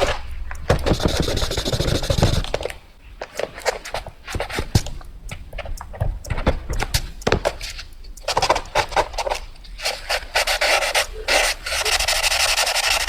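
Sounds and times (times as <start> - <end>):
pencil drawing on paper: 0.0 - 2.6, 8.8 - 13.0.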